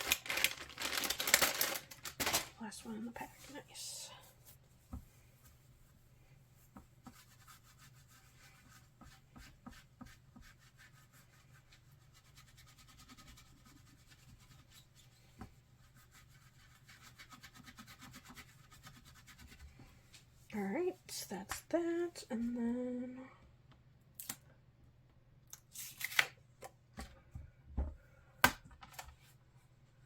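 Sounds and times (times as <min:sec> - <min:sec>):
wipe rubbing and scratching: 0:04.3 - 0:19.8.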